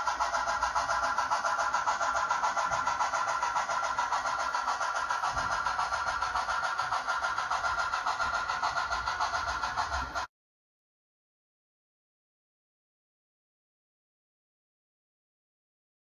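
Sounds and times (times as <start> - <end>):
engine running steadily: 0.0 - 10.3.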